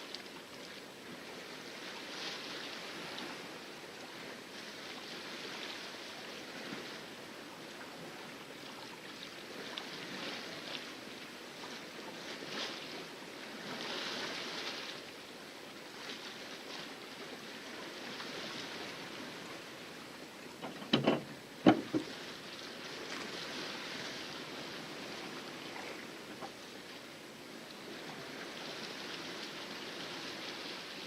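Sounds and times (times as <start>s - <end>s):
water rushing against a hull: 0.0s - 31.0s
water slapping the hull: 17.5s - 27.0s.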